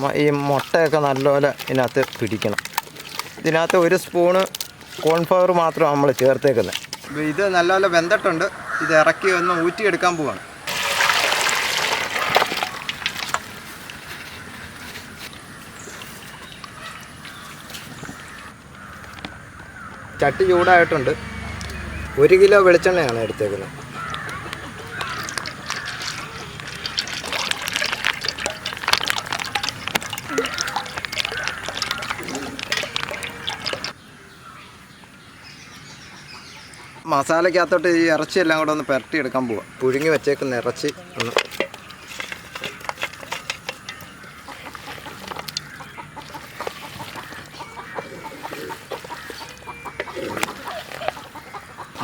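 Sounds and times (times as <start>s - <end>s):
hens clucking: 5.0s - 13.2s, 13.8s - 34.0s, 38.0s - 52.0s
oil pouring into frying pan: 10.7s - 13.3s.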